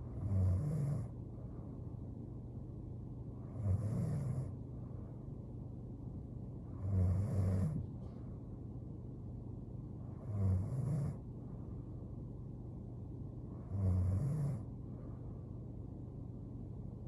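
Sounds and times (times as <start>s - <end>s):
steady low hum: 0.0s - 17.0s
woman snoring: 0.2s - 1.1s, 3.5s - 4.5s, 6.8s - 7.8s, 10.2s - 11.2s, 13.7s - 14.6s.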